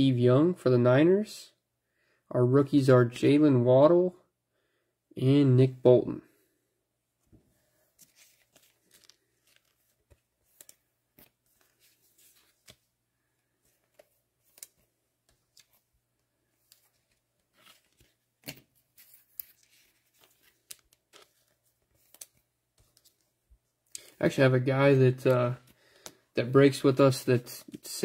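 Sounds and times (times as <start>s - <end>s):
trading cards rustling and clicking: 7.8s - 24.2s, 24.8s - 28.0s.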